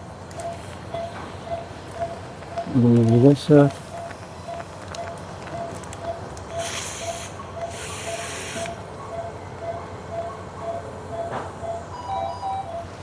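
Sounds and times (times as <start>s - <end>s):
patient monitor beeping: 0.0s - 13.0s
short hissing bursts: 6.6s - 8.8s.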